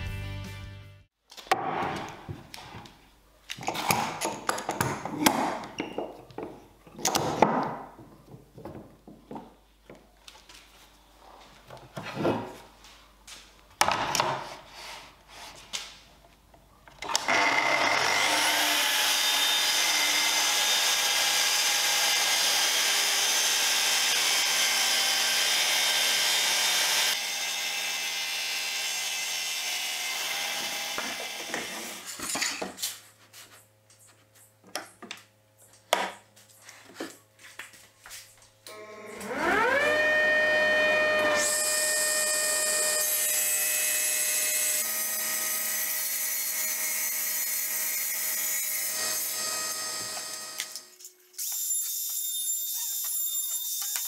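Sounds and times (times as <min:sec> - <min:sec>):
workpieces knocking and scraping: 0:01.5 - 0:10.1, 0:11.4 - 0:12.8, 0:31.0 - 0:37.8
electric power tool whining: 0:17.0 - 0:32.1, 0:38.7 - 0:54.0.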